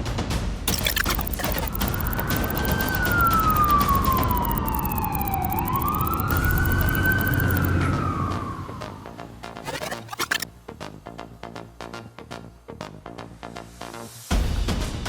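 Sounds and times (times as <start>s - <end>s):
wailing siren: 1.9s - 9.2s.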